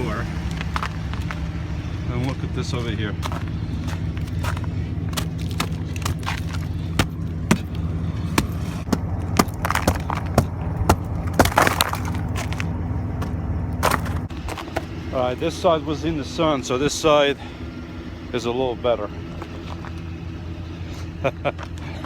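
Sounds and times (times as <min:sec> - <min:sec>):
engine idling: 0:00.0 - 0:22.0
ice and snow cracking: 0:03.3 - 0:12.7.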